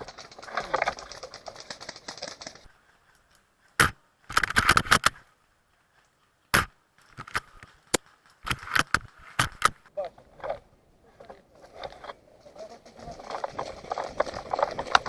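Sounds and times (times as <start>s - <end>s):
sharp clicks and rattles: 0.0s - 2.7s, 4.3s - 5.2s, 11.8s - 15.0s
rustling: 0.0s - 15.0s.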